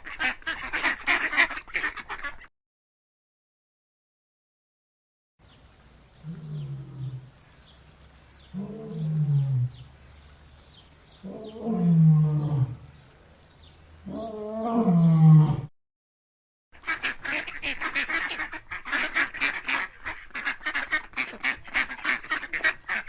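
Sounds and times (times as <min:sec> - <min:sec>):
deep animal calls falling in pitch: 0:06.2 - 0:07.3, 0:08.5 - 0:09.9, 0:11.2 - 0:13.0, 0:14.0 - 0:15.7.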